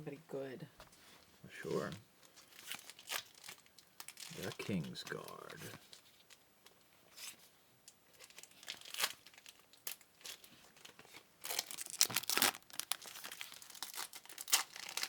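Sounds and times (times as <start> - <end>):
wrappers crinkling and tearing: 2.2 - 4.9, 8.1 - 15.0.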